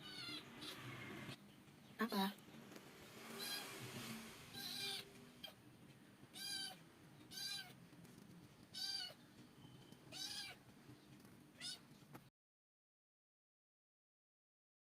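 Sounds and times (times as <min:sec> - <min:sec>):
cat meowing: 0:00.0 - 0:01.4, 0:03.4 - 0:03.7, 0:04.5 - 0:05.6, 0:06.3 - 0:07.8, 0:08.7 - 0:09.2, 0:10.1 - 0:10.6, 0:11.6 - 0:11.9.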